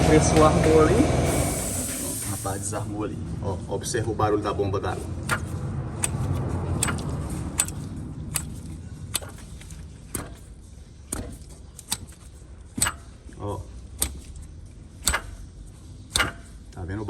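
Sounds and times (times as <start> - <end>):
engine running: 0.0 - 2.0, 4.8 - 13.2, 13.8 - 16.6
water pump growling and scraping: 4.8 - 13.0
sharp ticks: 5.3 - 10.4, 15.0 - 15.4, 16.1 - 16.5.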